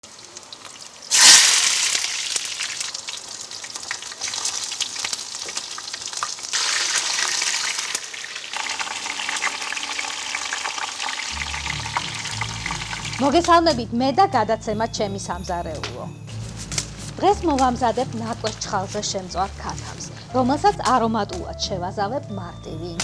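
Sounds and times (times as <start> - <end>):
food sizzling in hot fat: 0.0 - 13.5, 16.3 - 21.1.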